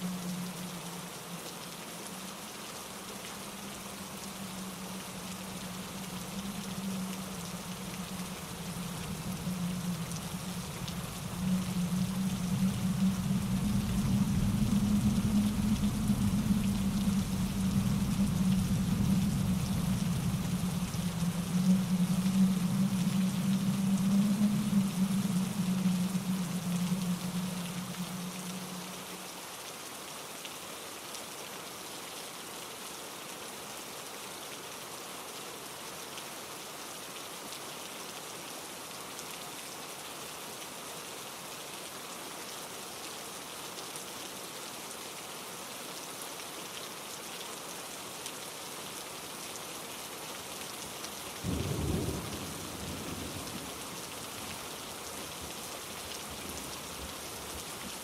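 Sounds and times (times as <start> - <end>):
rain hissing: 0.0 - 35.8, 41.8 - 58.0
stream water rushing: 0.0 - 52.1
low rumble: 3.8 - 29.1.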